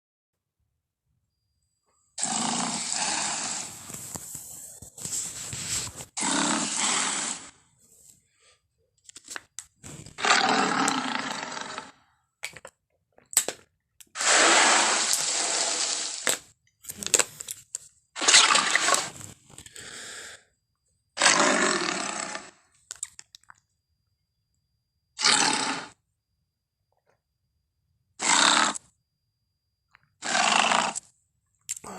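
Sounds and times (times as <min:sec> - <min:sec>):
growl: 0:02.2 - 0:03.7, 0:06.2 - 0:07.5, 0:10.2 - 0:12.0, 0:21.2 - 0:22.6, 0:25.2 - 0:26.0, 0:28.2 - 0:28.9, 0:30.2 - 0:31.1
dinosaur roars: 0:06.2 - 0:07.5, 0:10.2 - 0:12.0, 0:21.2 - 0:22.6
snaps and cracks: 0:13.2 - 0:13.7.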